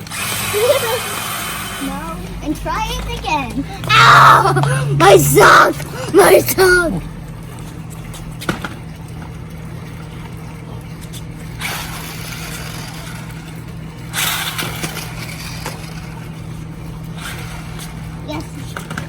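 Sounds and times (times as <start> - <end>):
remote-control truck humming: 0.0 - 7.0, 14.1 - 16.3.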